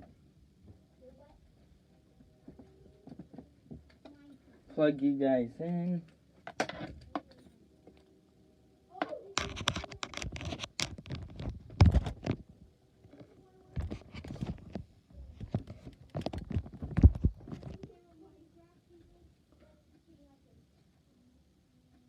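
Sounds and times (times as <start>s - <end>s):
microphone handling noise: 9.4s - 12.6s, 13.8s - 17.9s.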